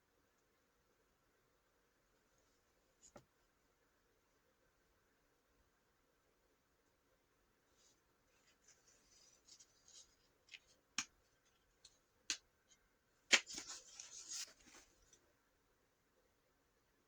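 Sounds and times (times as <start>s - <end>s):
paper rustling: 13.3s - 15.2s.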